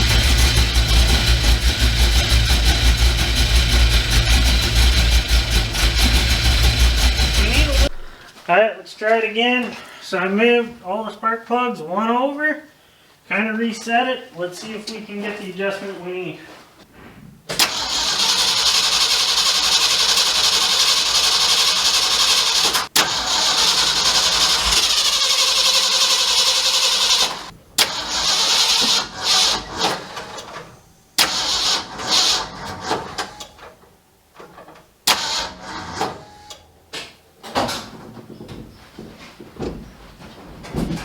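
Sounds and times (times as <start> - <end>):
engine cranking on starter: 0.0 - 8.2, 17.6 - 33.7, 35.0 - 36.7.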